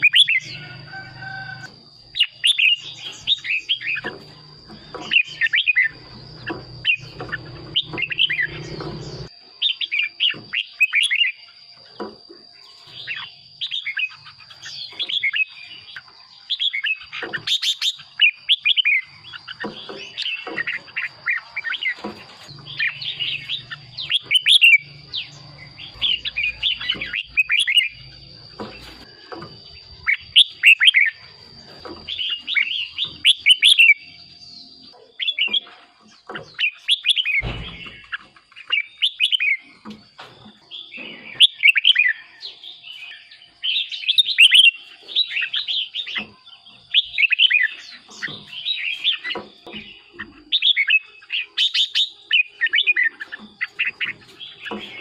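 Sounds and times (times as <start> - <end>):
bird singing warbled phrases: 0.0 - 0.9, 1.5 - 55.0.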